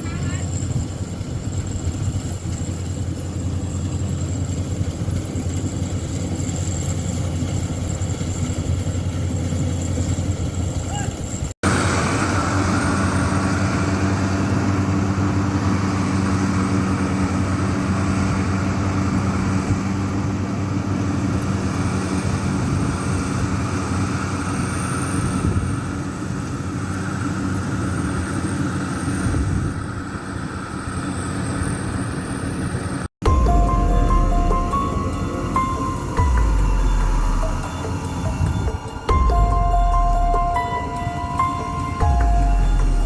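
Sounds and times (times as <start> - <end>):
combine harvester engine running: 0.0 - 43.0.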